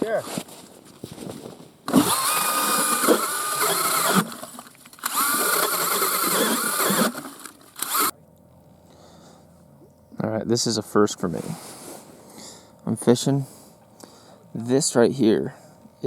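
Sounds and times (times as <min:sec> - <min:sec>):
power ice auger boring: 0:01.9 - 0:04.4, 0:05.0 - 0:08.1.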